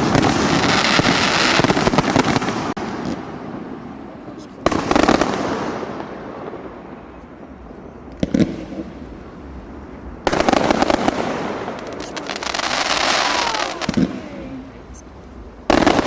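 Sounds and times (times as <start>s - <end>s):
firework bang: 0.0s - 3.6s, 10.2s - 14.4s, 15.7s - 16.0s
fireworks crackling: 0.0s - 16.0s.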